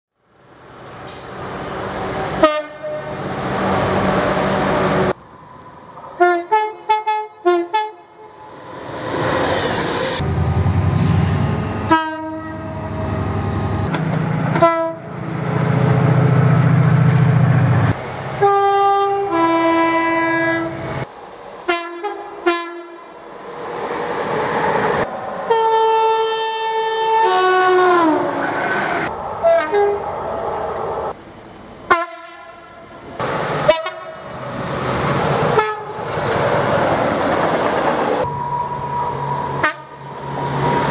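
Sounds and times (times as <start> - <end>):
passing train rumble: 0.3 - 40.9
train horn blasts: 2.4 - 3.2, 6.2 - 8.3, 10.2 - 13.8, 14.5 - 15.1, 18.4 - 20.8, 21.7 - 23.1, 25.5 - 28.4, 29.4 - 30.0, 31.9 - 32.8, 33.7 - 34.3, 35.6 - 36.0, 38.2 - 40.3.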